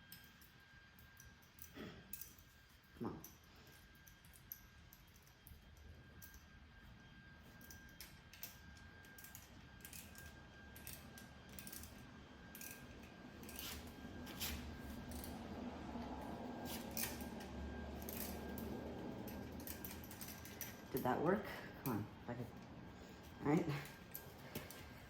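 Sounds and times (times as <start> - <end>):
small metal parts clicking: 0.0 - 6.5, 7.6 - 13.8, 18.0 - 21.1.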